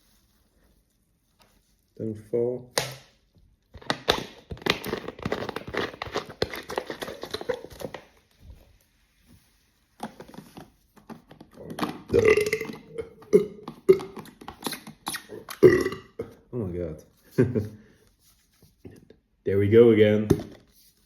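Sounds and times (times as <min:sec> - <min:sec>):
man belching: 0:12.1 - 0:14.3, 0:15.3 - 0:16.5.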